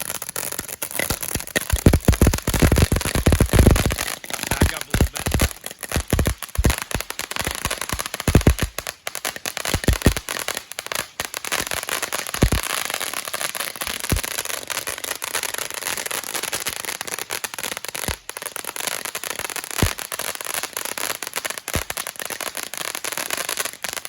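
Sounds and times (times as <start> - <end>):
firework crackling: 0.0 - 24.0
low thumps: 6.1 - 7.0.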